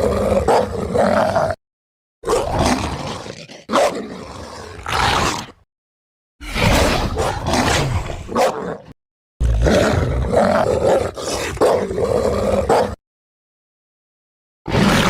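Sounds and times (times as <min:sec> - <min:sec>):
monster growling roars: 0:00.0 - 0:01.6, 0:02.2 - 0:05.6, 0:06.4 - 0:13.0.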